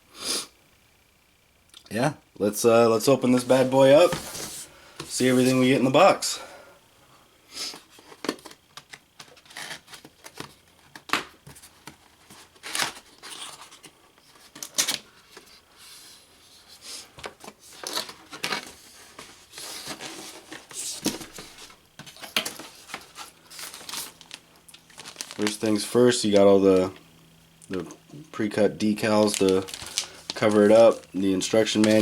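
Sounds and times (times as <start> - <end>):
cardboard box being unpacked: 3.6 - 5.6, 8.0 - 15.6, 17.2 - 25.6, 29.1 - 32.0.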